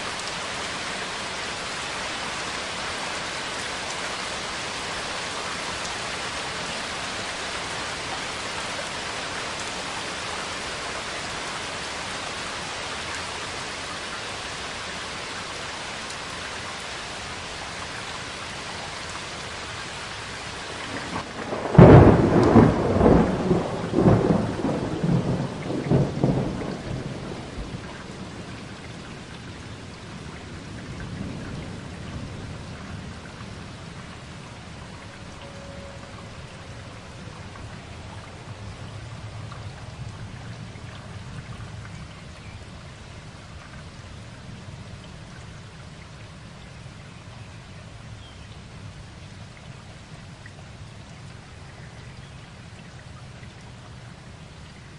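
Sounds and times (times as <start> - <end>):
steady rain falling: 0.0 - 54.9
thunder crack and rumble: 21.0 - 29.2.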